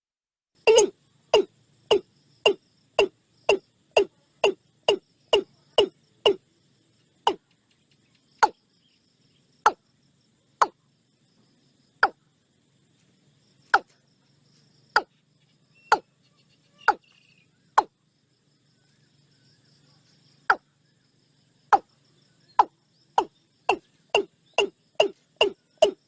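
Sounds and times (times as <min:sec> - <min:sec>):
faint high insect chirring: 0:00.6 - 0:26.0.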